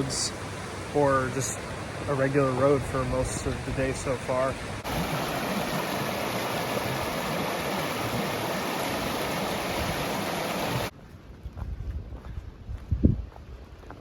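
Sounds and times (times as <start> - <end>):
creek water flowing: 0.0 - 10.9.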